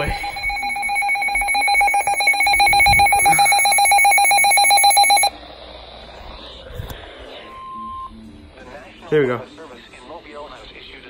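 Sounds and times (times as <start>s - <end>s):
fluttering two-tone alarm: 0.0s - 5.3s.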